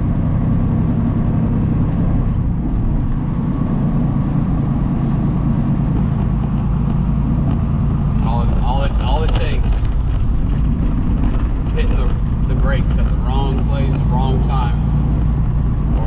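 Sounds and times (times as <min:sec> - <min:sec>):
truck diesel engine drone: 0:00.0 - 0:16.0
tyre noise: 0:05.0 - 0:16.0.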